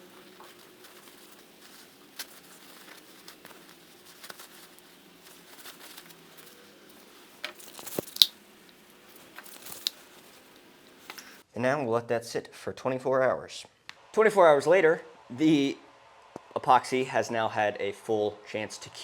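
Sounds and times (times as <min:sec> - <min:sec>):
crinkling: 0:00.0 - 0:11.4
faint steady hum: 0:00.0 - 0:11.4.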